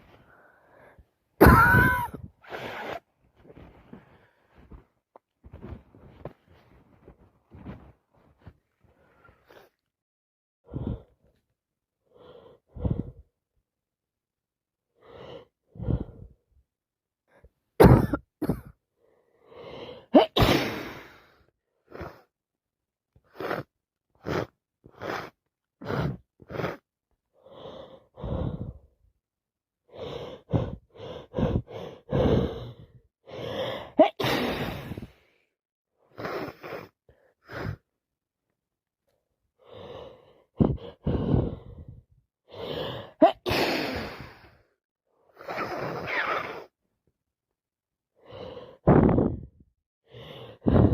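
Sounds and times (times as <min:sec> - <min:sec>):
woman sniffling and gasping: 0:00.7 - 0:04.8, 0:29.9 - 0:35.4, 0:39.6 - 0:44.7, 0:50.1 - 0:50.9
woman sneezing: 0:01.4 - 0:02.2.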